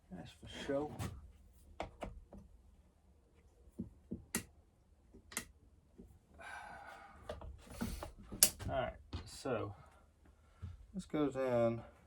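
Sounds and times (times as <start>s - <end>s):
light clicks and taps of parts: 5.1s - 6.1s.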